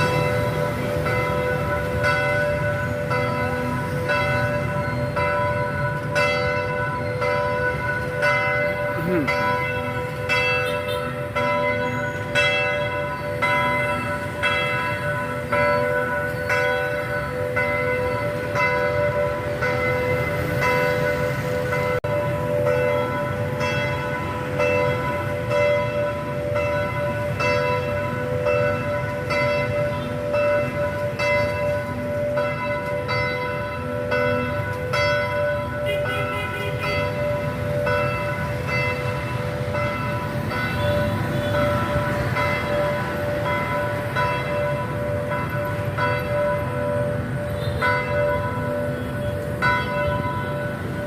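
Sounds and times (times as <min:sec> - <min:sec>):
church bells pealing: 0:00.0 - 0:51.0.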